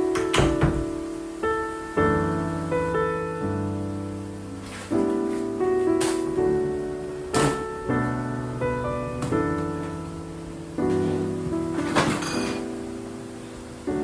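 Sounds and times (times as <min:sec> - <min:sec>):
gentle piano music: 0:00.0 - 0:14.0.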